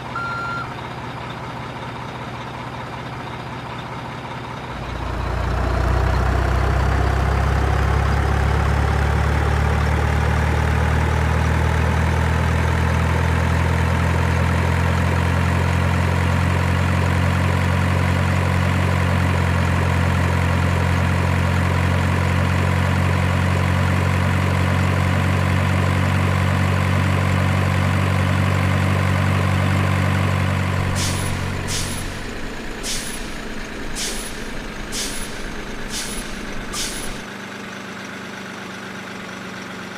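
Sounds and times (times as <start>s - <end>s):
truck engine droning with whine: 0.0s - 39.9s
short sharp noise bursts: 31.0s - 37.2s.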